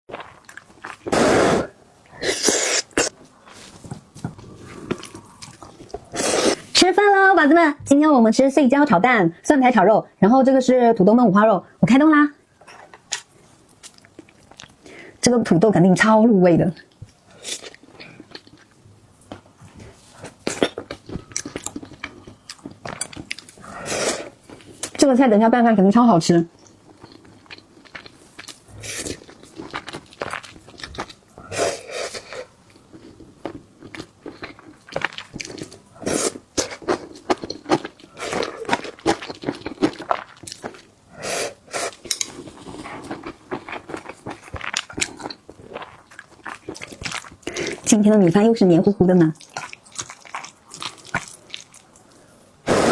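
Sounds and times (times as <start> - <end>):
person chewing food: 0.1 - 6.7, 12.8 - 14.9, 17.4 - 24.9, 26.6 - 40.9, 41.5 - 47.9, 49.4 - 52.9.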